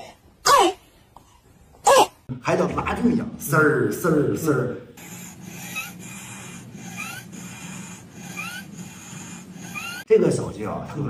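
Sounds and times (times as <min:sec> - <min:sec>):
rasping breaths with whistle: 0:05.0 - 0:10.1.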